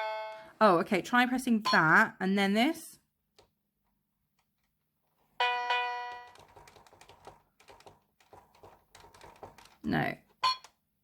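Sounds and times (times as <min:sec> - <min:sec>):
electronic keyboard ding-dong: 0:00.0 - 0:00.5, 0:05.4 - 0:06.4.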